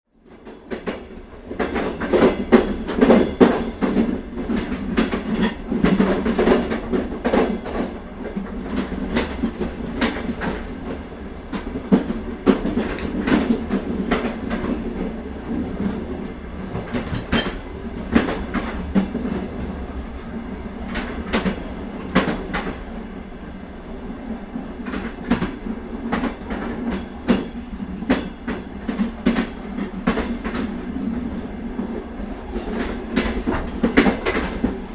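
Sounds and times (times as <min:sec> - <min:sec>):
train rumbling along track: 0:00.1 - 0:34.9.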